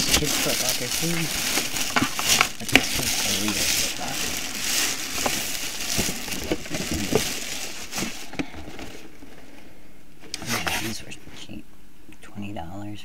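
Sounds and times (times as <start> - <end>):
packaging crinkling and rustling: 0.0 - 9.5.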